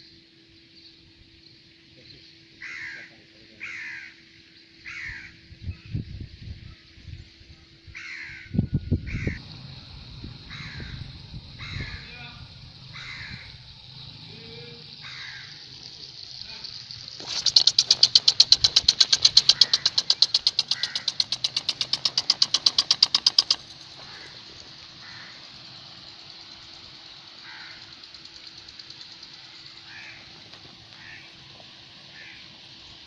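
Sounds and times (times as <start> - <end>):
sprinkler water spray hiss: 9.4 - 33.0
sprinkler clicking rapidly: 10.6 - 33.0.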